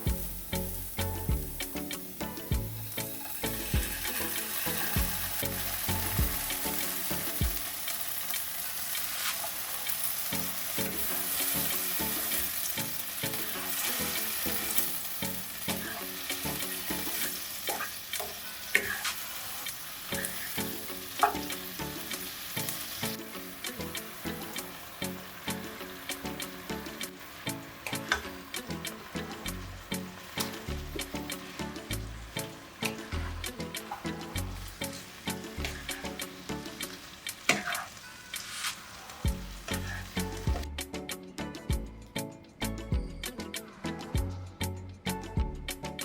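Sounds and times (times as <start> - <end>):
food sizzling in hot oil: 0.0 - 40.6
utensil tapping pan: 13.2 - 40.6.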